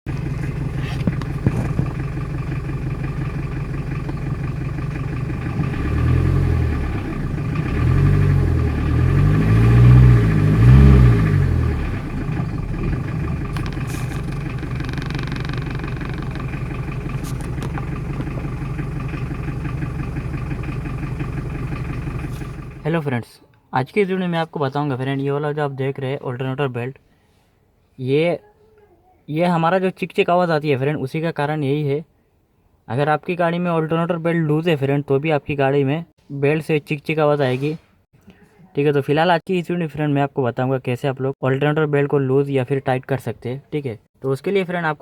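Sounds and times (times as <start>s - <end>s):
alternator belt chirping: 0.1s - 5.9s, 11.8s - 22.9s
car engine idling and revving: 0.1s - 22.9s.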